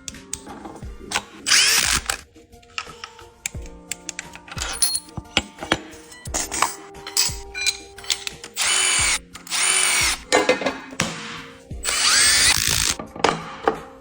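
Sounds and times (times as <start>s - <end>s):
metal parts clicking and knocking: 0.0s - 11.1s
power tool whirring: 1.1s - 2.2s, 6.4s - 10.3s, 11.8s - 13.0s.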